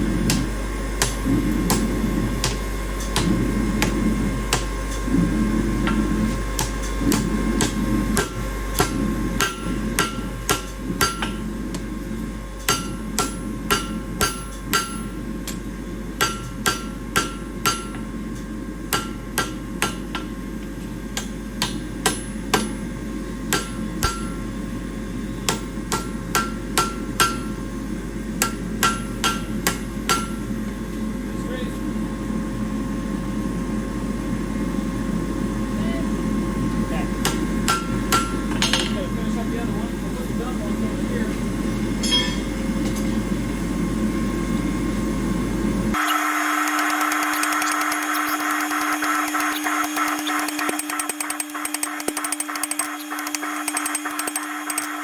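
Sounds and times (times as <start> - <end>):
hammer striking steel bars: 6.6 - 11.8, 12.6 - 15.6, 16.2 - 18.0, 18.9 - 20.3, 21.2 - 22.9, 23.5 - 24.5, 25.4 - 27.6, 28.4 - 30.5, 37.2 - 39.0, 42.0 - 42.5.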